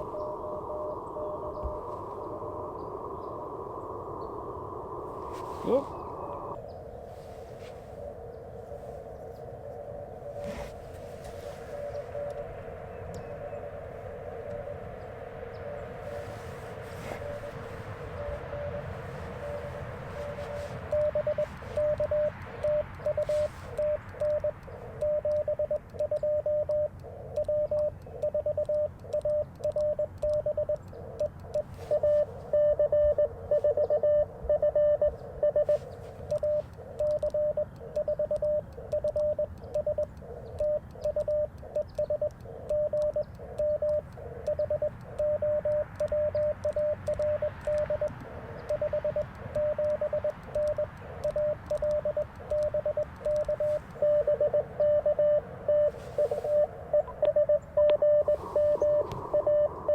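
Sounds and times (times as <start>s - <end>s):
radio band hiss: 0.0s - 59.9s
morse code tone: 15.6s - 59.9s.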